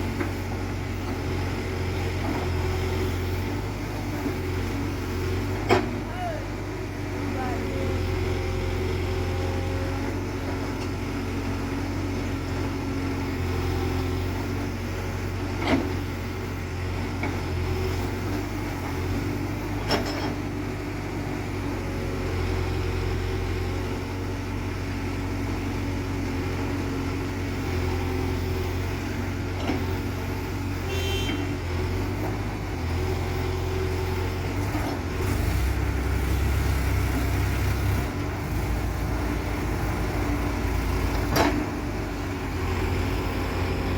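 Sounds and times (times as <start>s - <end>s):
backhoe diesel engine droning: 0.0s - 43.9s.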